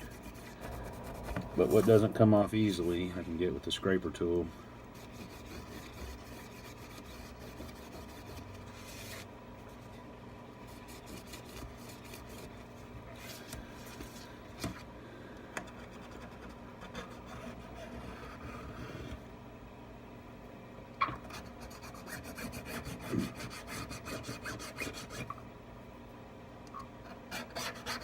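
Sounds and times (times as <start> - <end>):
metal scraper scratching: 5.0 - 9.2, 21.3 - 25.3, 27.2 - 28.0.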